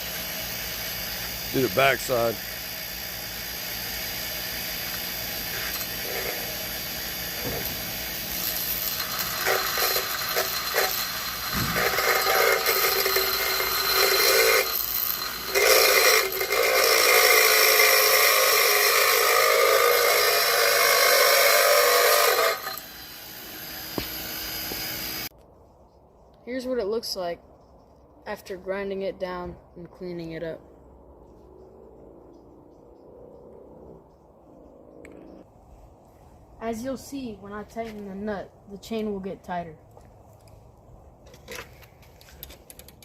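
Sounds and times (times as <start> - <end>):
harsh metal grinding: 0.0 - 25.3.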